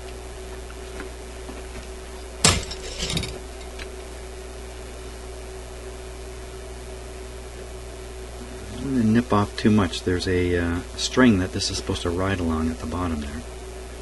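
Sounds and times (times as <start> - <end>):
steady low hum: 0.0 - 14.0.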